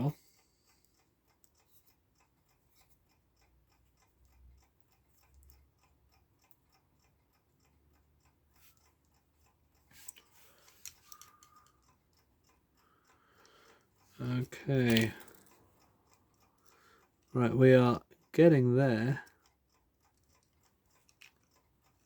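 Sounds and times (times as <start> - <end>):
mechanical clock ticking: 0.0 - 22.0
handling clicks: 14.6 - 15.6.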